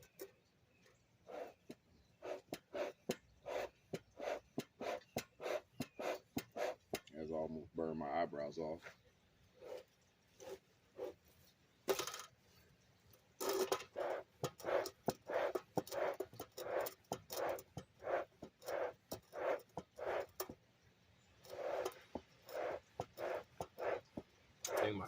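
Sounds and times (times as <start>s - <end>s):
bee smoker bellows puffing: 1.3s - 7.1s, 13.4s - 20.6s, 21.4s - 25.0s.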